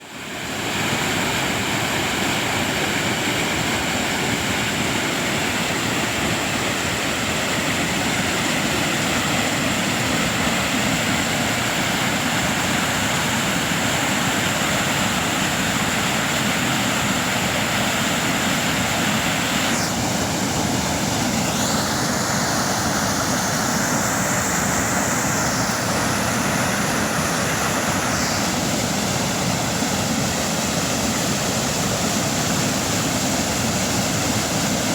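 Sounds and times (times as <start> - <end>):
river flowing over rocks: 0.0 - 34.9.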